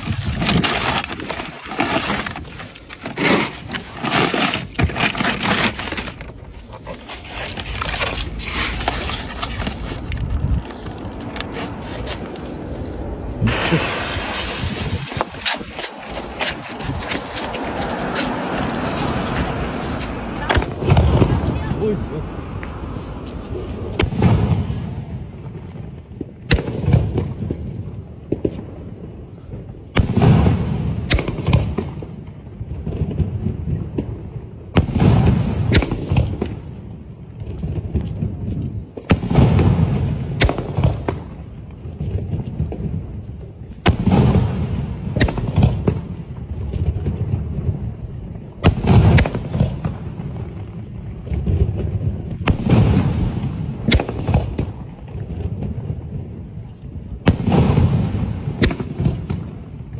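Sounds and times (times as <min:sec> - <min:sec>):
fireworks cracking and booming: 0:12.6 - 0:22.6, 0:23.7 - 0:59.9.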